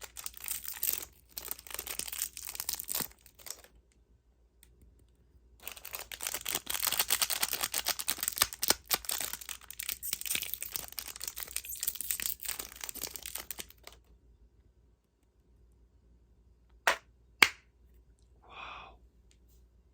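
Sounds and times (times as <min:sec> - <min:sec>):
candy packaging crinkling: 0:00.0 - 0:03.8, 0:05.6 - 0:14.1.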